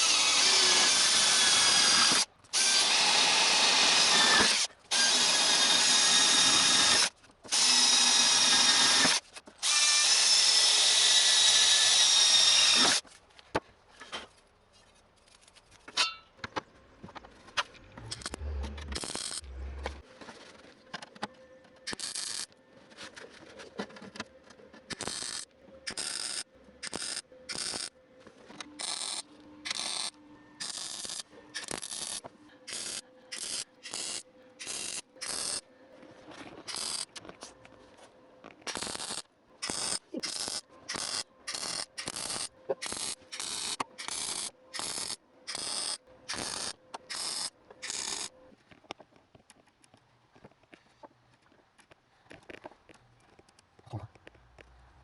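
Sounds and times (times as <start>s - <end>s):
welder arc bursts: 28.8s - 35.6s, 38.7s - 48.3s.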